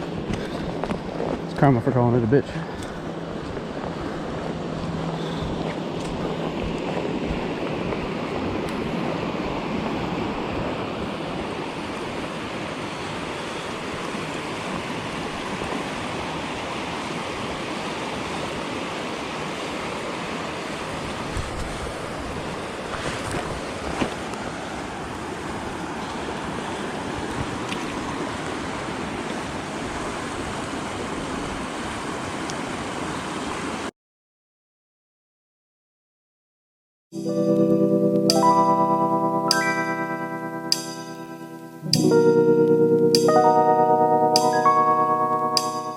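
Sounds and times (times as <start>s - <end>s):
floodwater rushing: 0.0s - 33.8s.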